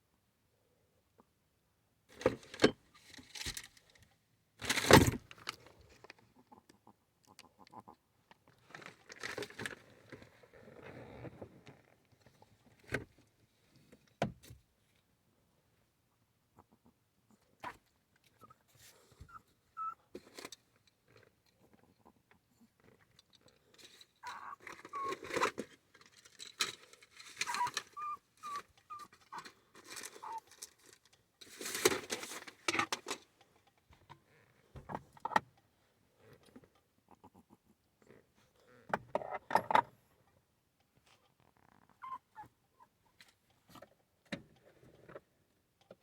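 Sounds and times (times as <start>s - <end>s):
puppy sniffing and snuffling: 24.2s - 25.4s, 27.4s - 30.5s
high squeaks: 27.4s - 29.4s.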